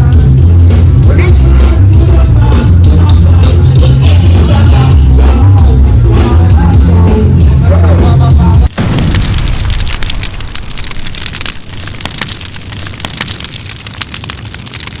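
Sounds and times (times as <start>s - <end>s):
live band music: 0.0s - 8.7s.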